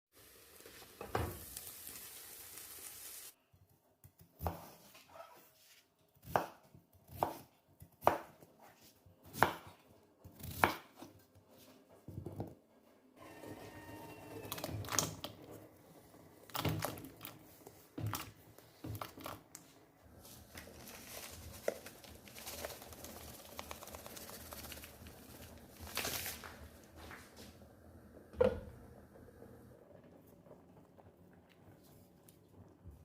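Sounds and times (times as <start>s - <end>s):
steady hiss: 0.2s - 3.4s.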